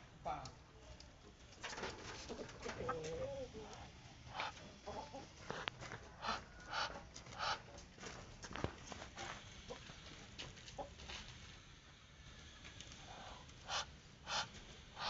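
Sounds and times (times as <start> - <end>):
chickens clucking: 1.6 - 8.0, 10.6 - 11.1, 13.0 - 15.0.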